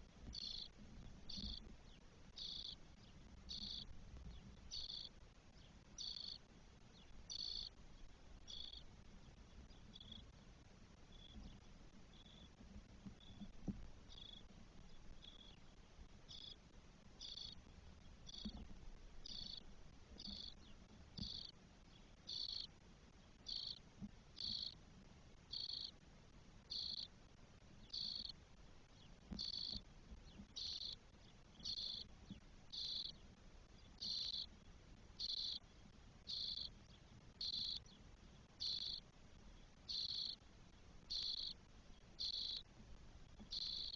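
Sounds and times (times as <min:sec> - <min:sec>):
nestlings raspy calls: 0:00.4 - 0:00.7, 0:02.4 - 0:02.8, 0:03.5 - 0:03.9, 0:04.7 - 0:05.1, 0:06.0 - 0:06.4, 0:07.3 - 0:07.7, 0:08.5 - 0:08.8, 0:17.2 - 0:17.6, 0:18.3 - 0:18.5, 0:19.2 - 0:19.6, 0:20.2 - 0:20.6, 0:21.2 - 0:21.5, 0:22.3 - 0:22.7, 0:23.5 - 0:23.8, 0:24.4 - 0:24.8, 0:25.5 - 0:25.9, 0:26.7 - 0:27.1, 0:27.8 - 0:28.3, 0:29.4 - 0:29.8, 0:30.6 - 0:31.0, 0:31.6 - 0:32.1, 0:32.7 - 0:33.2, 0:34.0 - 0:34.5, 0:35.2 - 0:35.6, 0:36.3 - 0:36.8, 0:37.4 - 0:37.8, 0:38.6 - 0:39.0, 0:39.9 - 0:40.4, 0:41.1 - 0:41.6, 0:42.2 - 0:42.6, 0:43.5 - 0:43.9.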